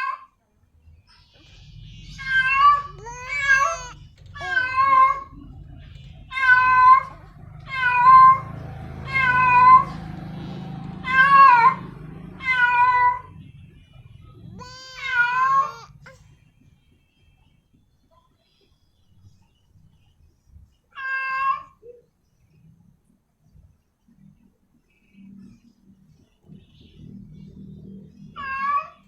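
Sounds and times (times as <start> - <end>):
cat meowing: 2.2 - 5.3, 14.5 - 16.0, 21.0 - 21.8, 28.4 - 29.0.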